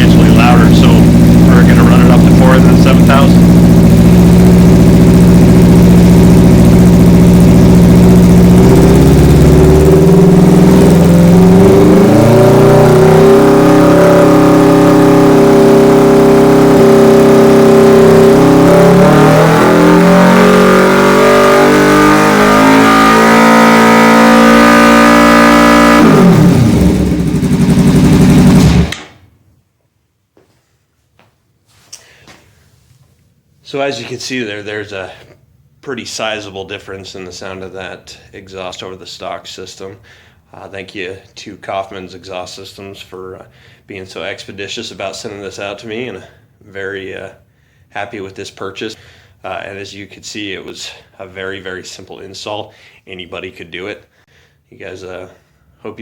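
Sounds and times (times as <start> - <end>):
motorcycle engine revving: 0.0 - 29.1.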